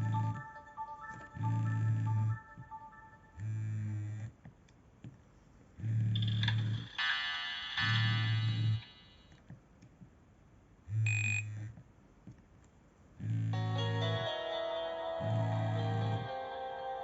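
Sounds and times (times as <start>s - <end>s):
phone ringtone melody: 0.0s - 3.4s, 13.6s - 17.0s
phone vibration motor buzzing: 3.4s - 4.3s, 10.9s - 11.8s.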